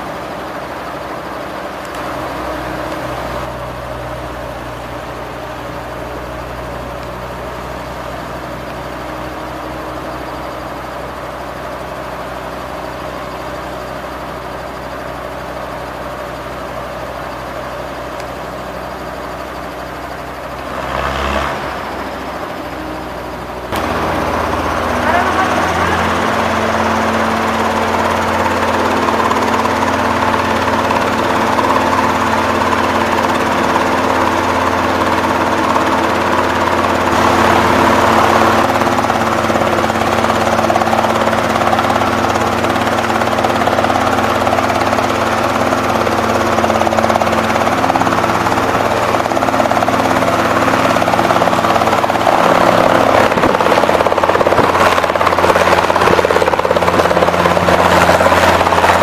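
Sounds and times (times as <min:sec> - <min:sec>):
helicopter engine and rotor drone: 0:00.0 - 0:59.0.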